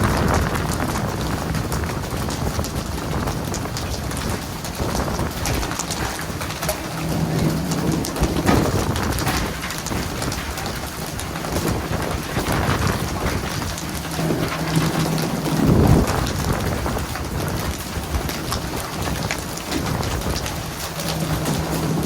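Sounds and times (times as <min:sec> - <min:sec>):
falling and splashing water: 0:00.0 - 0:22.0
low rumble: 0:00.0 - 0:22.0
low steady hum: 0:00.0 - 0:22.0.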